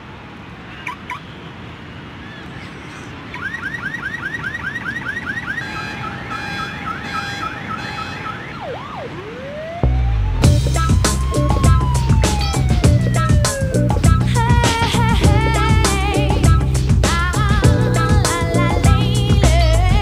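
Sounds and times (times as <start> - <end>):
car alarm: 3.3 - 10.1, 10.8 - 13.8
steady rushing noise: 8.6 - 20.0.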